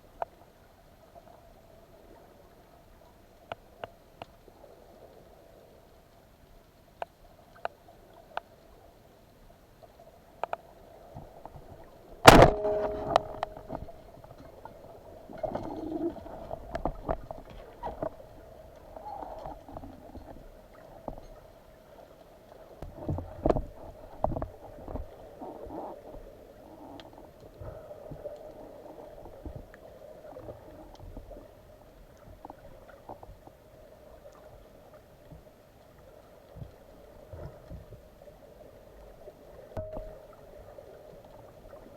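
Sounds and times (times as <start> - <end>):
underwater hum: 10.8 - 21.2, 36.0 - 41.9
loud sharp crack: 12.3 - 13.9
underwater clicks and knocks: 12.3 - 18.4, 22.8 - 25.1, 39.8 - 40.4.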